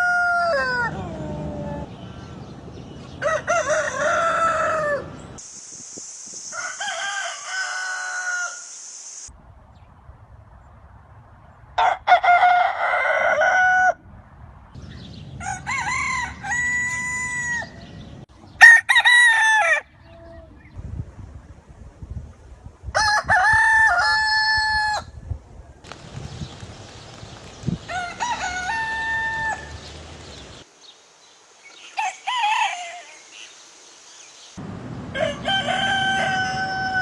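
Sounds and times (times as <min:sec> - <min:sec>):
roosters crowing: 0:00.0 - 0:05.4, 0:06.5 - 0:08.7, 0:11.8 - 0:14.0, 0:15.1 - 0:20.2, 0:23.0 - 0:25.1, 0:27.6 - 0:30.6, 0:31.8 - 0:33.2, 0:34.6 - 0:37.0
steady high hiss: 0:05.3 - 0:09.4, 0:28.9 - 0:35.1.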